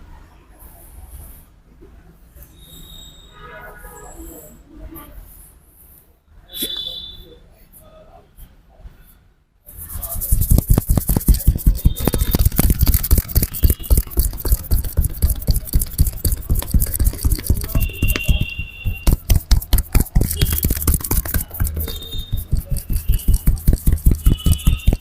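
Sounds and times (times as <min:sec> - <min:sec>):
hands slapping a head: 0:09.8 - 0:25.0.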